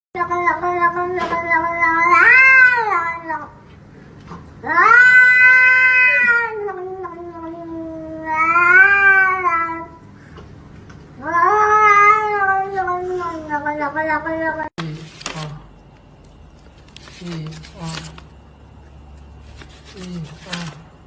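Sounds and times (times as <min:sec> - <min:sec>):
cat yowling: 0:00.2 - 0:03.5, 0:04.6 - 0:10.0, 0:11.2 - 0:14.7.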